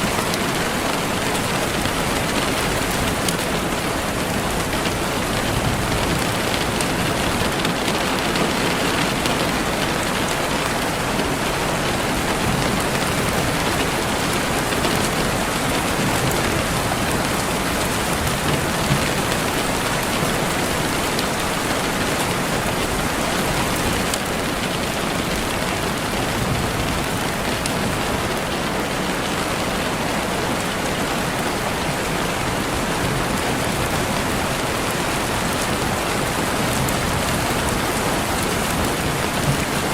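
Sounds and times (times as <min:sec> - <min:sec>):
steady rain pattering: 0:00.0 - 0:39.9.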